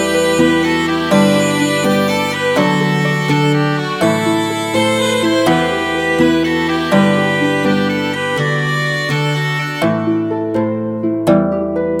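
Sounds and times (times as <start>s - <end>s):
bowed and plucked strings music: 0.0s - 12.0s.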